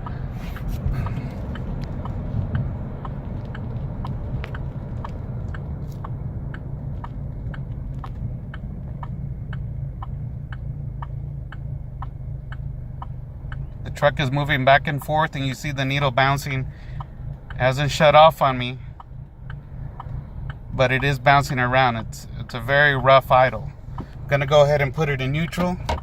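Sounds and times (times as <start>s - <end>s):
engine idling roughly: 0.0s - 2.6s, 9.7s - 26.0s
engine ticking: 0.0s - 26.0s.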